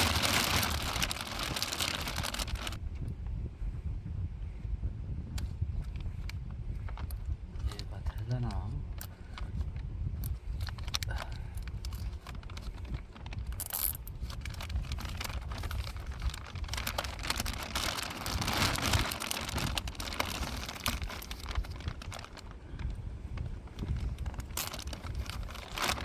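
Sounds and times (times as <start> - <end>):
rustling and crinkling: 0.0 - 3.1, 5.4 - 26.0
small clicks and crackles: 0.0 - 3.1, 5.4 - 26.0
low rumble: 0.0 - 7.6.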